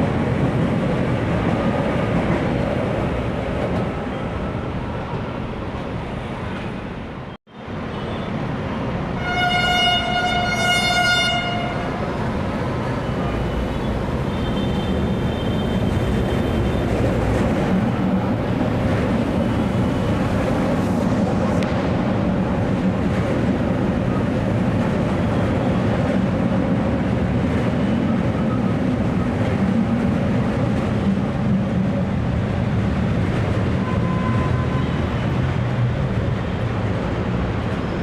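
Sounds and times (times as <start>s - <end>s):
train rumbling: 0.0s - 7.8s, 8.4s - 38.0s
train horn steady tone: 9.2s - 12.0s.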